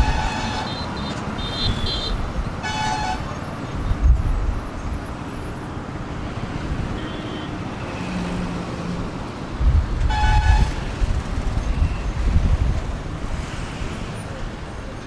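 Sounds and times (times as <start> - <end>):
vehicle horn honking: 0.0 - 3.4, 7.0 - 7.9, 10.0 - 11.0
heavy road traffic: 0.0 - 15.0.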